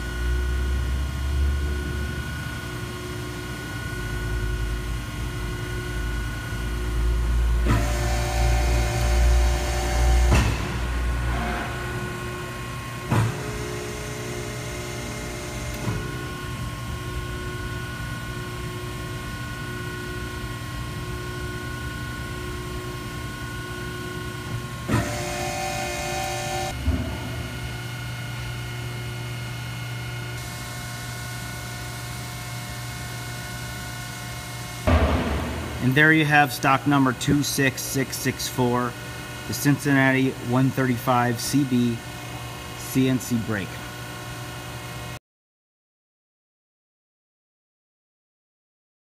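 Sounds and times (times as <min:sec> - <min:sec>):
hydraulic press hum: 0:01.6 - 0:44.8
sharp clunks: 0:34.9 - 0:36.1.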